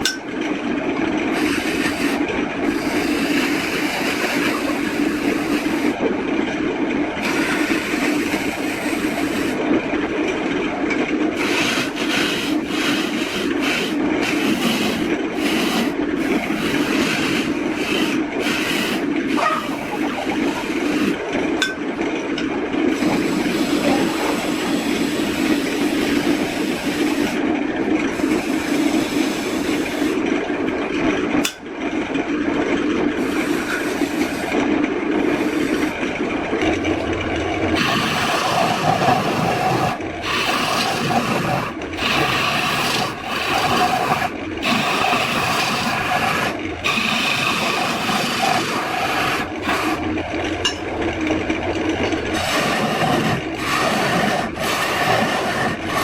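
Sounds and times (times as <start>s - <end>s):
filing or sanding wood: 1.3s - 6.0s, 7.2s - 9.6s, 11.4s - 21.2s, 33.2s - 34.6s, 37.8s - 50.1s, 52.2s - 56.0s.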